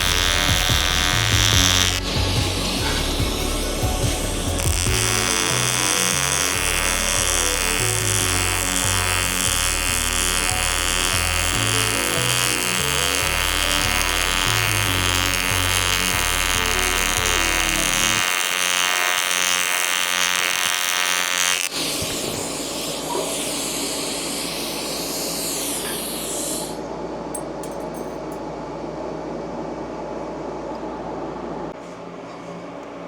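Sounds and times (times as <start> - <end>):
steady hissing noise: 0.0 - 18.2, 21.7 - 27.0
music: 0.0 - 18.3.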